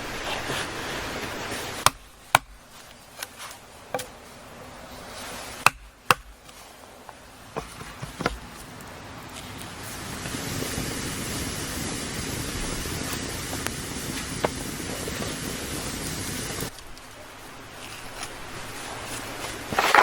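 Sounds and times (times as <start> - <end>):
sharp chopping knocks: 1.8 - 2.9, 5.6 - 6.6, 7.6 - 8.5
steady rushing noise: 9.8 - 16.7.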